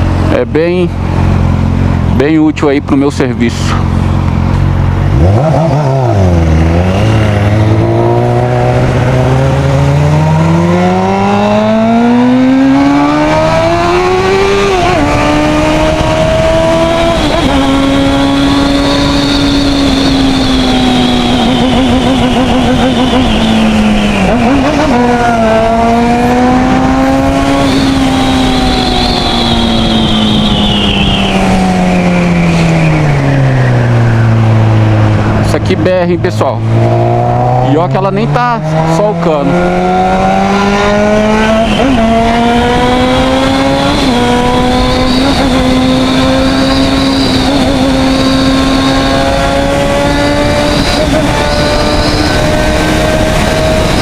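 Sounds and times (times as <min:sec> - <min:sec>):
motorcycle engine revving: 0:00.0 - 0:54.0
wind rush: 0:03.8 - 0:35.9, 0:39.5 - 0:54.0.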